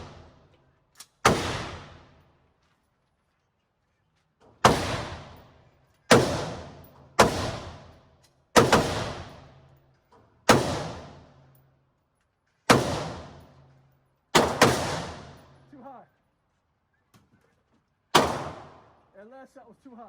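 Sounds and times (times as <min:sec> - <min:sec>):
rifle shots with echo: 0:01.2 - 0:02.2, 0:04.6 - 0:05.5, 0:06.1 - 0:08.0, 0:08.6 - 0:09.6, 0:10.5 - 0:11.4, 0:12.7 - 0:13.6, 0:14.3 - 0:15.6, 0:18.1 - 0:18.9.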